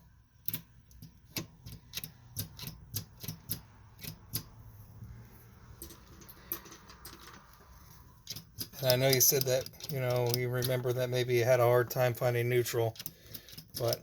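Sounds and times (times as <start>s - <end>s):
metallic gearbox clicking: 0.4s - 4.6s, 8.2s - 11.2s, 12.5s - 14.0s.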